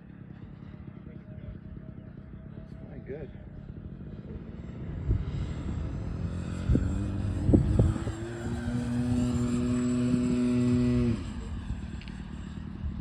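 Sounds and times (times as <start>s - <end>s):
rc jet flying overhead: 0.0s - 13.0s
wind buffeting microphone: 3.4s - 13.0s.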